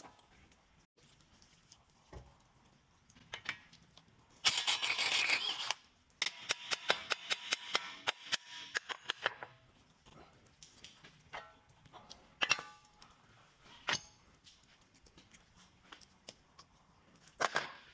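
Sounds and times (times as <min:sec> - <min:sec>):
metal tools clinking and knocking: 0:11.3 - 0:14.5.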